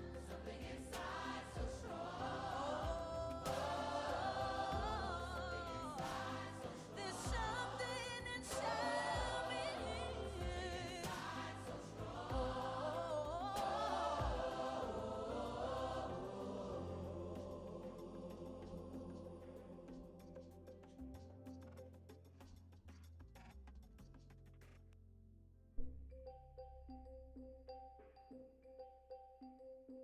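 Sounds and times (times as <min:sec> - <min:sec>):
gospel choir singing over a beat: 0:00.0 - 0:21.0.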